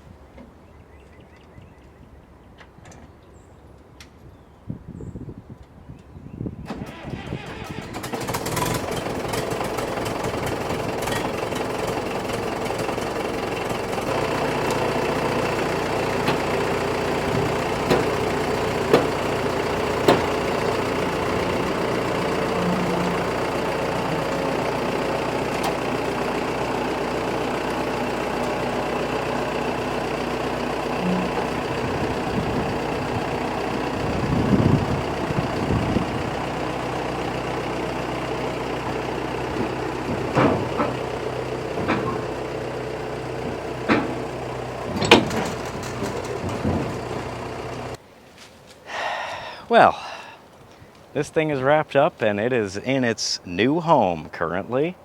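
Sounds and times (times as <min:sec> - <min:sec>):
engine idling with knocking clatter: 0:06.8 - 0:48.0
deep rumble: 0:13.8 - 0:26.9, 0:30.8 - 0:36.5.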